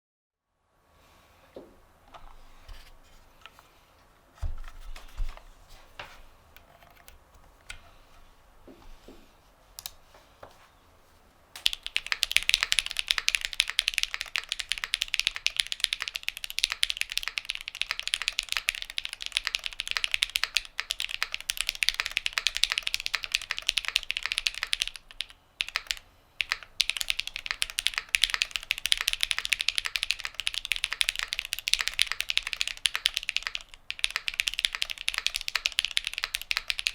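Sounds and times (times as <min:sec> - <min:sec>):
typing on mechanical keyboard: 0:11.6 - 0:36.9.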